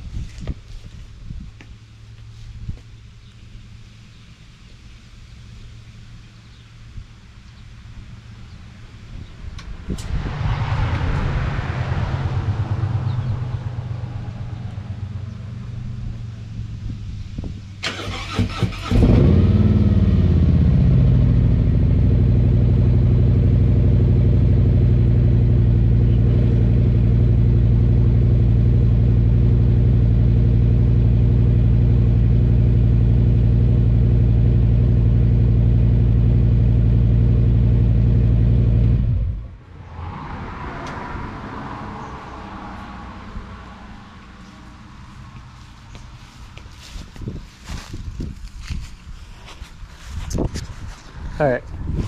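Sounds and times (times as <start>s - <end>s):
car engine starting and idling: 7.2s - 47.0s.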